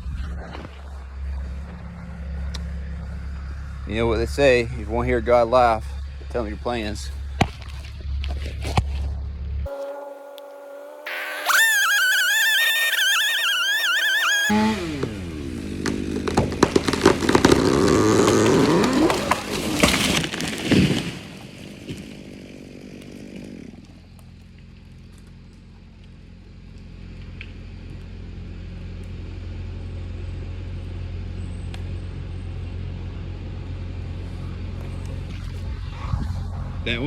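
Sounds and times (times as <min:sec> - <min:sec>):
bulldozer engine running: 0:00.0 - 0:19.5, 0:22.2 - 0:37.0
tree crashing down: 0:14.5 - 0:23.5
tree cracking: 0:14.5 - 0:27.6.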